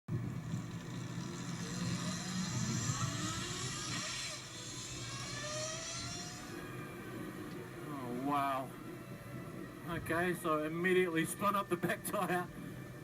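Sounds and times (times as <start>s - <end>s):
electric motor whining: 0.1s - 10.1s.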